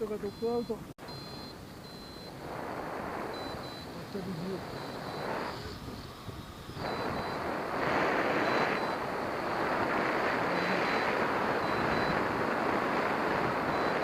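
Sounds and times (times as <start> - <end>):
faint high beep: 0.0 - 2.4, 3.3 - 6.1, 6.7 - 7.5, 8.4 - 9.0, 10.5 - 12.3, 13.6 - 14.0
wind rushing over microphone: 0.0 - 14.0.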